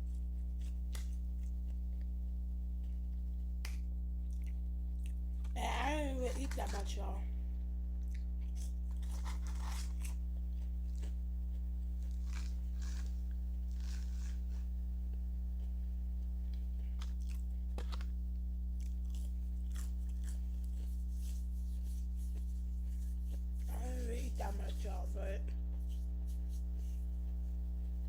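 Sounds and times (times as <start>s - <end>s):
person chewing crunchy food: 0.0s - 2.2s, 4.2s - 5.6s, 8.0s - 23.8s, 25.6s - 28.0s
low hum: 0.0s - 28.0s.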